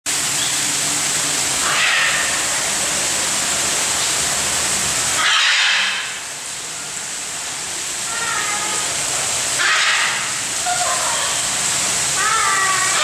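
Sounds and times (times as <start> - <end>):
steady loud hiss: 0.1 - 13.0.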